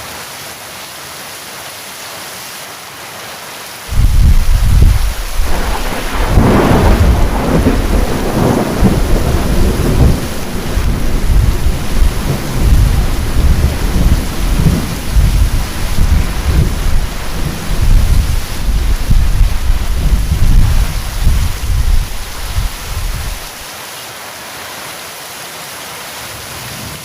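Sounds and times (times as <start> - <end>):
heavy rain: 0.0 - 27.0
thunder rumbling: 3.9 - 23.6.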